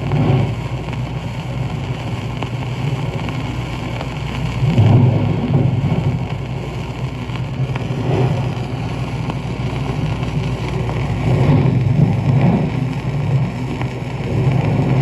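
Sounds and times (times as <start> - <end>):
record surface noise: 0.0 - 15.0
waves breaking: 4.6 - 15.0.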